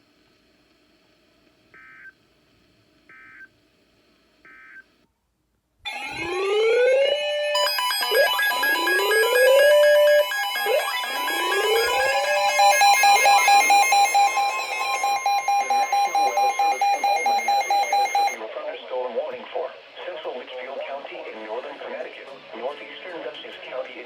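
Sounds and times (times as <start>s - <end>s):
electronic alarm wailing: 5.9s - 18.4s
fast electronic buzzing: 5.9s - 18.4s
steady electronic tones: 5.9s - 18.4s
warbling data bursts: 5.9s - 18.4s.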